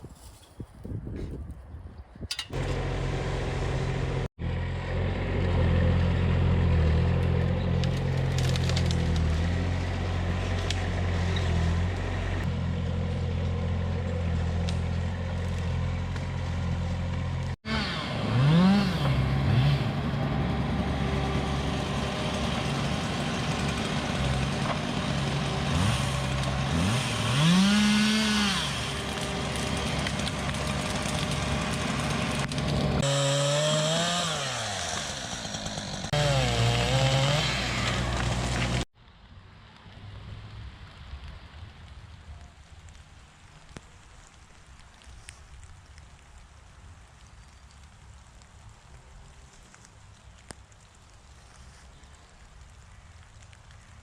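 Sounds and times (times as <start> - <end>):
engine running and revving: 2.6 - 38.9.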